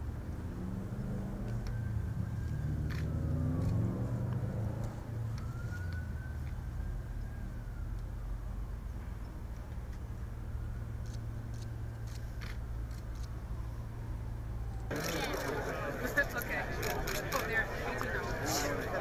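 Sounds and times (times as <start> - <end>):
aircraft engines droning overhead: 0.0 - 19.0.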